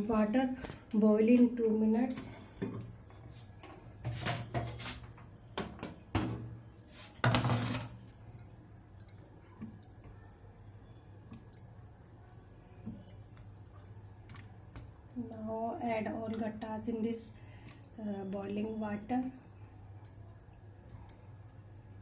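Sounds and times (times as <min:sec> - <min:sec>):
dish scraping: 0:07.0 - 0:08.1.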